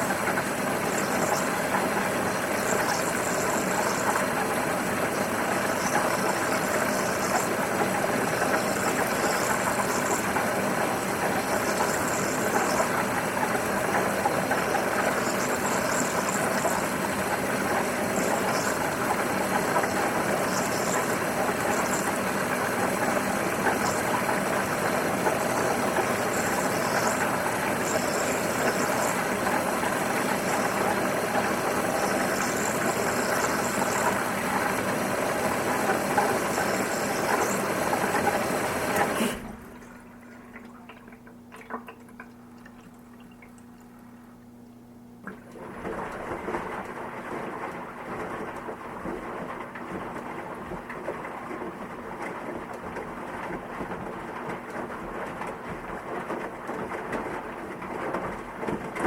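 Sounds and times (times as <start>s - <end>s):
washing machine water rushing: 0.0s - 59.0s
low steady hum: 39.4s - 45.6s.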